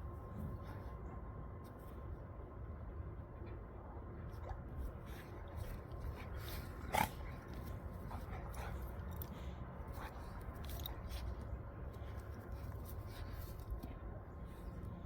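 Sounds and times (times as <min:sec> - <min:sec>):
dogs scuffling and mouthing: 0:04.4 - 0:15.0.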